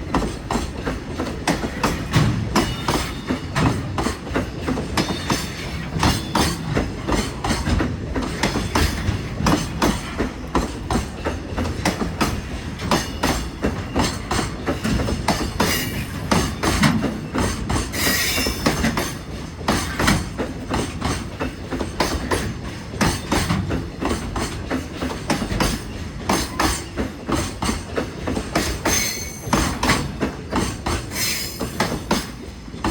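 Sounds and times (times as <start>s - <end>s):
train wheels clicking over rail joints: 0.0s - 32.9s
high-pitched wheel squeals: 18.0s - 18.7s.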